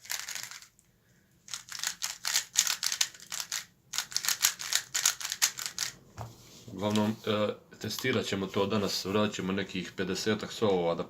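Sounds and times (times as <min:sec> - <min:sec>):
puzzle cube plastic clicks: 0:00.0 - 0:00.8, 0:01.5 - 0:06.0.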